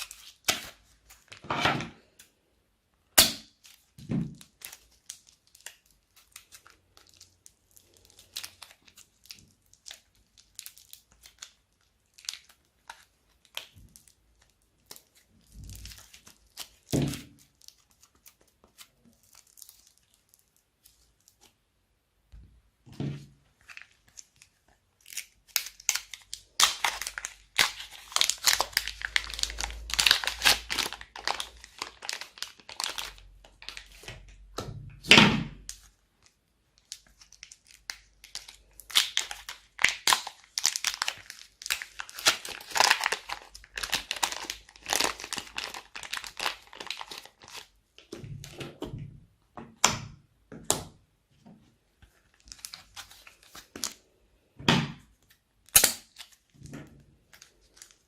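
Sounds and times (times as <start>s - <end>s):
slime crackling and popping: 3.2s - 21.5s, 23.7s - 34.0s, 36.8s - 47.7s, 55.7s - 56.6s.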